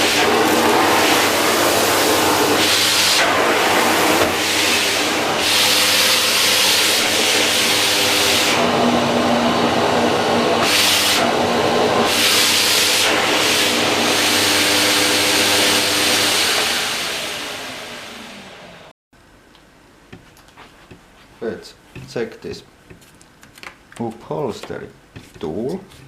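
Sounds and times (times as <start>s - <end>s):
vacuum cleaner motor humming: 0.0s - 18.9s.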